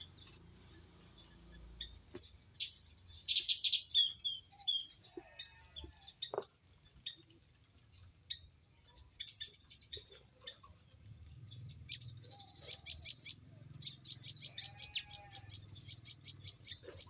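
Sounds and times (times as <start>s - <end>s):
bird chirping: 0.0s - 17.0s.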